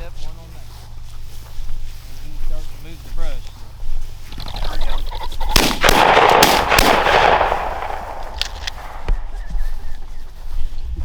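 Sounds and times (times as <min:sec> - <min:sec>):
shotgun shots: 0:05.5 - 0:09.3.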